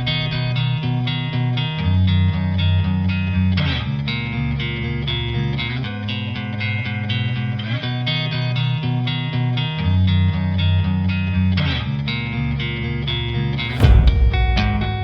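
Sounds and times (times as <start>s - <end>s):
guitar music with bass line: 0.0s - 15.0s.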